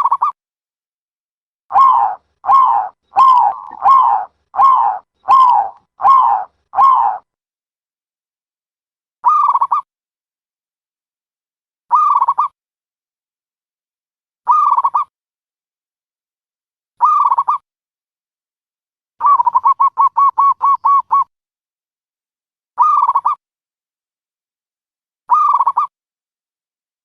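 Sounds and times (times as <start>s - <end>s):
dove cooing: 1.7s - 7.2s.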